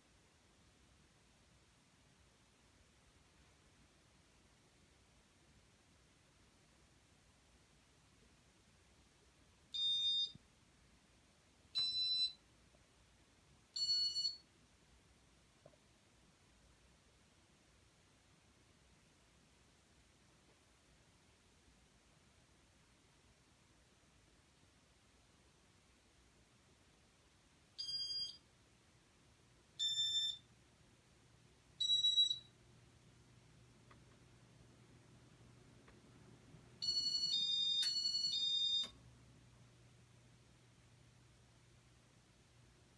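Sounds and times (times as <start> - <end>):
short high-pitched electronic beeps: 31.8 - 32.5.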